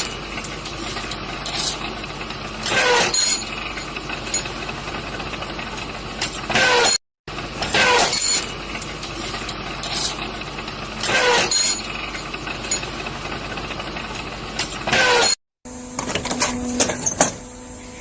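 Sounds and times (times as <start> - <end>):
industrial machine running: 0.0 - 18.0
machine stroke with squeal: 2.6 - 4.6, 6.4 - 7.0, 7.7 - 8.6, 11.0 - 13.0, 14.7 - 15.4.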